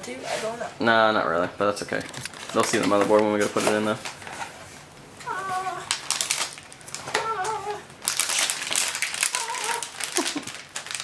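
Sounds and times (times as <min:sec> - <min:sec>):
plastic packaging crinkling: 0:01.9 - 0:11.0
cat meowing: 0:05.2 - 0:05.9, 0:07.1 - 0:07.9, 0:09.3 - 0:10.0.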